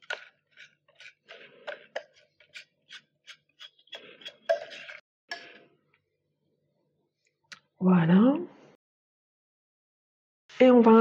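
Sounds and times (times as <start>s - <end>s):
spatula scraping bowl: 0.0s - 5.6s.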